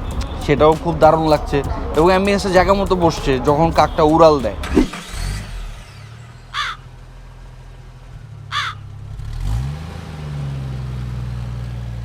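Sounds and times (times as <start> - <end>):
crow cawing: 6.5 - 6.9, 8.5 - 8.8.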